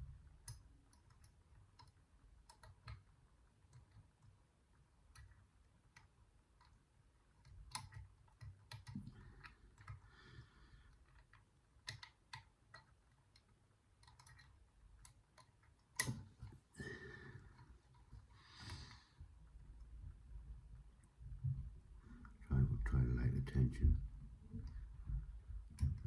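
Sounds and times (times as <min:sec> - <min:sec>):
lock picks clicking and scraping: 0:07.4 - 0:10.0, 0:10.9 - 0:16.3.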